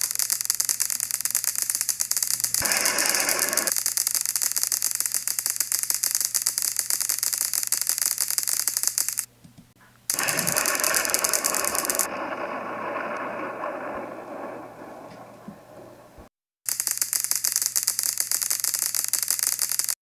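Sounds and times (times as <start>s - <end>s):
fast mechanical rattle: 10.1s - 12.1s, 16.7s - 20.0s.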